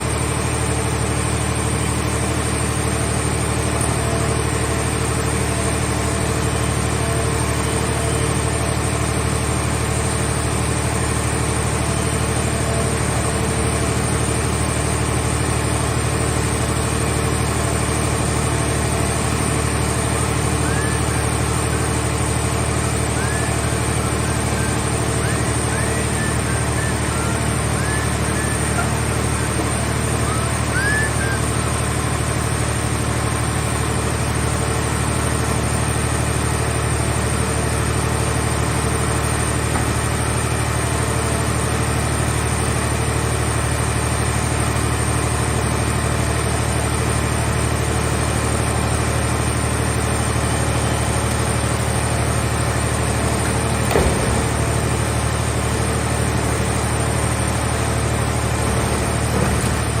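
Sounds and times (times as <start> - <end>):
heavy machinery engine running: 0.0 - 60.0
single knock: 53.9 - 54.6.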